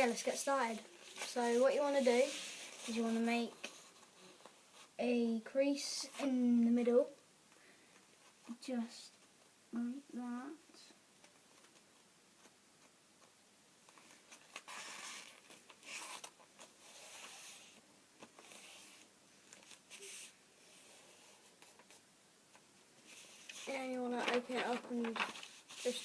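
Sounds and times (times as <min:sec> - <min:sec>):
paper rustling and sliding: 0:00.0 - 0:04.5, 0:13.9 - 0:26.0.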